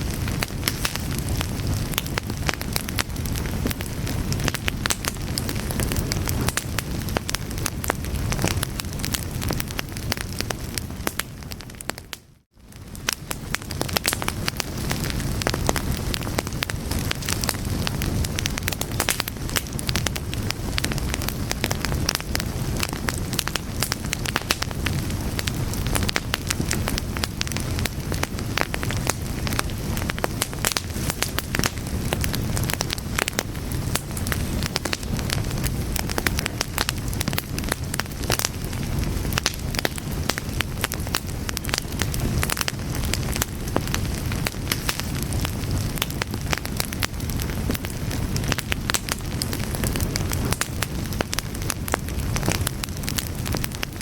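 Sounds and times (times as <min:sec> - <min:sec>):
fire crackling and popping: 0:00.0 - 0:54.0.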